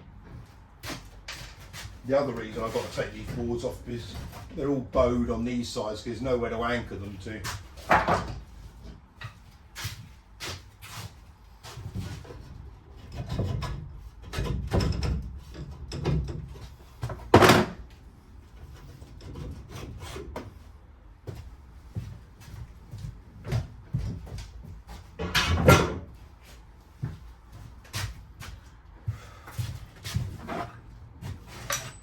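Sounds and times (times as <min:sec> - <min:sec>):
wooden knocks and clatter: 0:07.8 - 0:09.4, 0:12.0 - 0:17.9.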